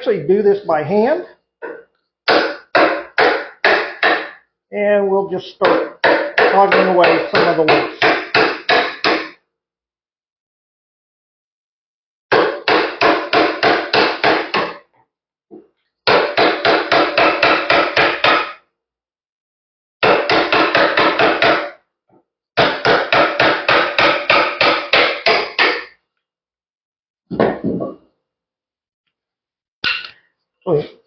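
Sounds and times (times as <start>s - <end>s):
mallet striking wood chisel: 1.6s - 4.4s, 5.6s - 9.4s, 12.3s - 14.8s, 16.0s - 18.6s, 20.0s - 21.8s, 22.6s - 26.0s.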